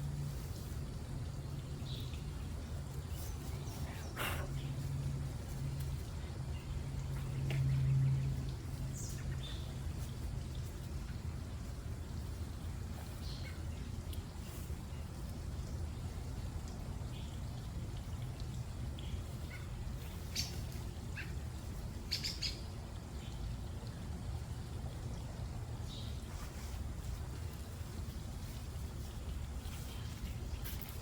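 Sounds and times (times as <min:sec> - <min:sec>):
small birds chirping: 0:00.4 - 0:24.0.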